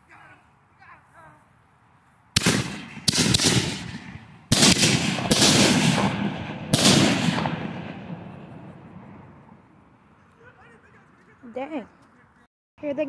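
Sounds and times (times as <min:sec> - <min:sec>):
firework booms with rolling echo: 0:02.4 - 0:09.7.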